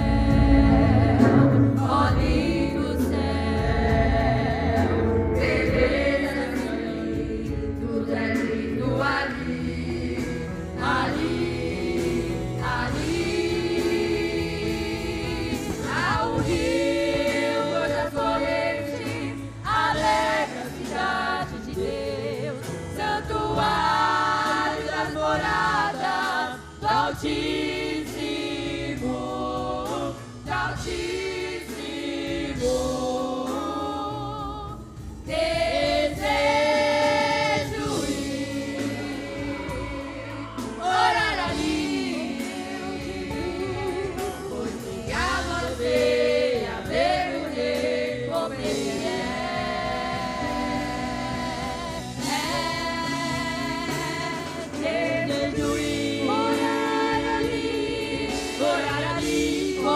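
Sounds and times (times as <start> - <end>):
women's vocal group singing gospel: 0.0 - 59.9.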